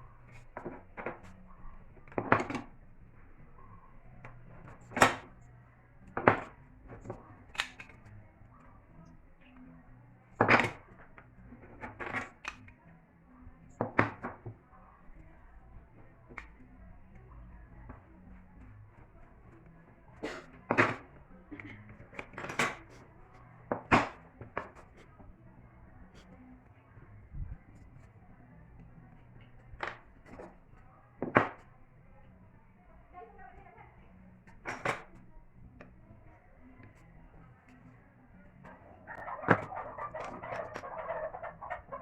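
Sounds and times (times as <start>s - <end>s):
faint low hum: 0.0s - 42.0s.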